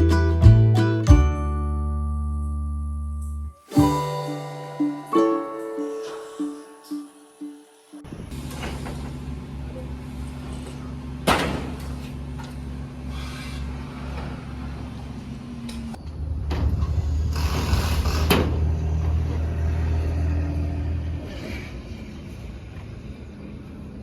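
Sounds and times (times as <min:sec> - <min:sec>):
engine running with low hum: 0:07.1 - 0:24.0.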